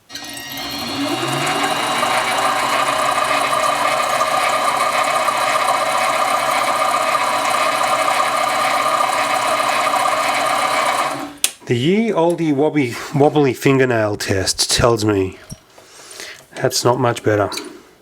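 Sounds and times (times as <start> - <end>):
mini lathe running: 0.0 - 11.4.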